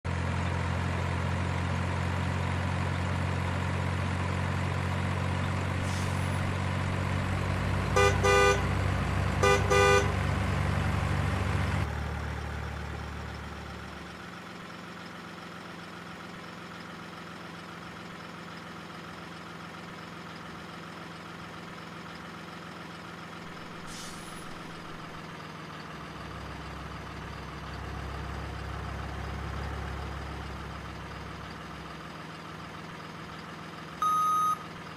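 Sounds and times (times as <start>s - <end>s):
short horn toots: 8.0s - 8.8s, 9.4s - 10.2s.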